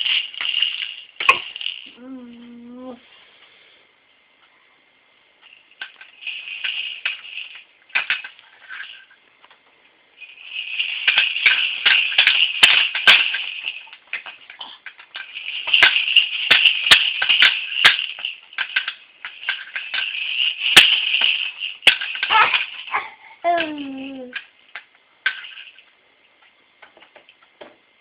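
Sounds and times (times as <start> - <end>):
baby rattle toy shaken: 0.0 - 2.6, 5.4 - 9.2, 10.2 - 25.9.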